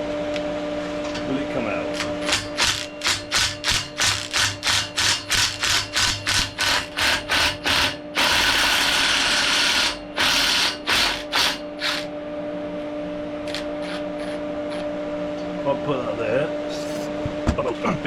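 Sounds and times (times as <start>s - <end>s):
steady hum: 0.0s - 18.0s
ratchet wrench clicking: 2.3s - 8.9s.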